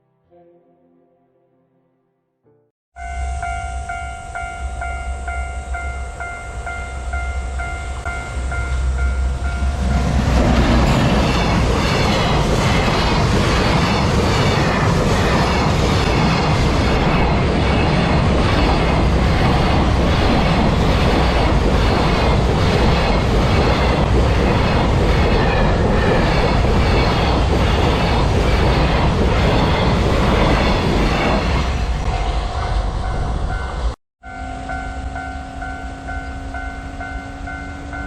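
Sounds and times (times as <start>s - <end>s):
train wheels clattering: 9.8s - 31.6s.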